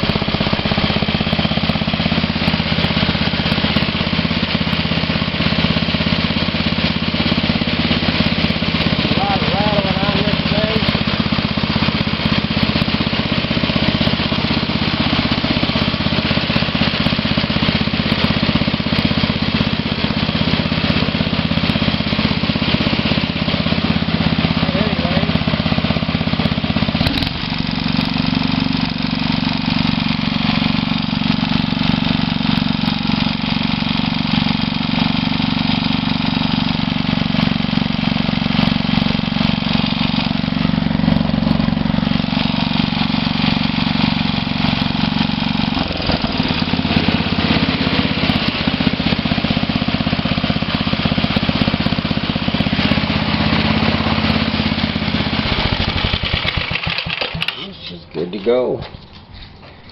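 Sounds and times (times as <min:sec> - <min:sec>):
small engine running: 0:00.0 - 0:59.9.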